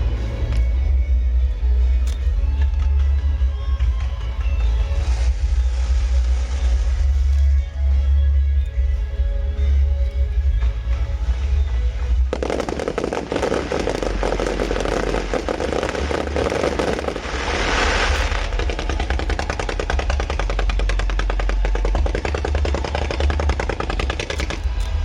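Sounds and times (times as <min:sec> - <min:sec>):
firework hissing rush: 0:12.3 - 0:24.8
rapid firework cracks: 0:12.3 - 0:25.0.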